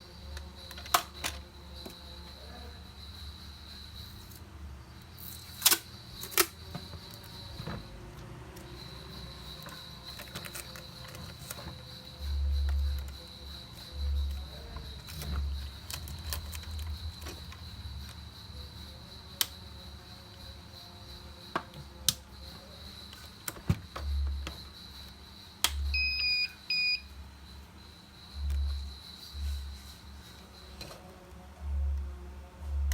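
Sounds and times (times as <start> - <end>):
faint high whine: 0.0 - 32.9
tape dispenser clicks: 5.5 - 6.6
quick electronic beeps: 25.9 - 27.1.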